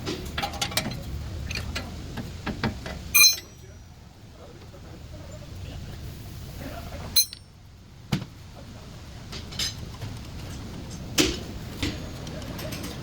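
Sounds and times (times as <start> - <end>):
low background hum: 0.0 - 13.0
metallic clinks and knocks: 3.2 - 3.7, 7.2 - 7.5.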